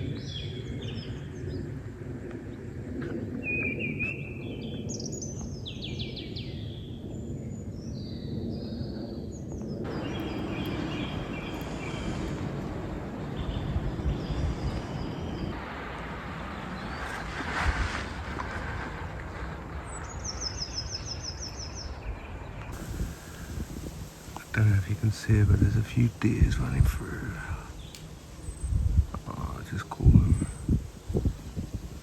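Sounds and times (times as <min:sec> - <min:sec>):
birds chirping and trilling: 0:07.8 - 0:12.4, 0:20.3 - 0:32.0
low background rumble: 0:22.8 - 0:32.0.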